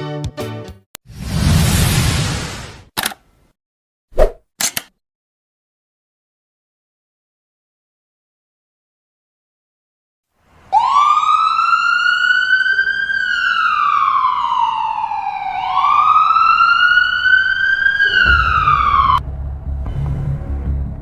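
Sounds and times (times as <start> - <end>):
ambulance siren wailing: 10.7 - 19.2.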